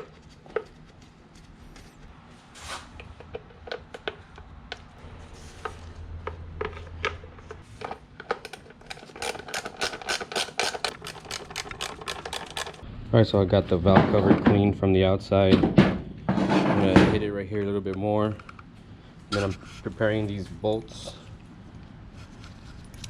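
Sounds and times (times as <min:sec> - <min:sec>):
tools clicking on metal parts: 0:08.4 - 0:12.8.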